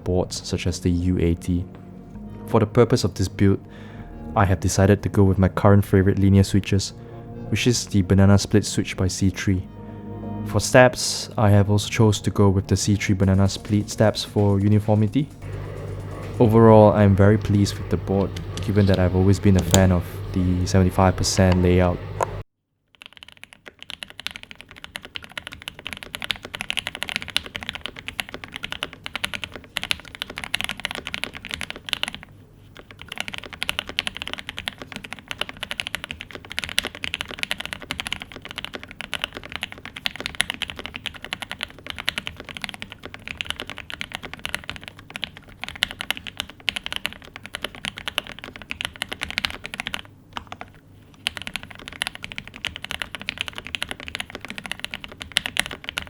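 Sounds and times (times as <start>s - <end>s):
mechanical keyboard typing: 12.8s - 21.9s, 23.0s - 56.0s.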